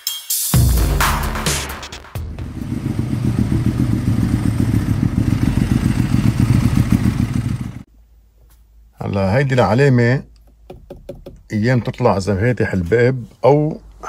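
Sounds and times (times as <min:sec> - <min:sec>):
engine running with fast pulse: 0:02.2 - 0:07.9.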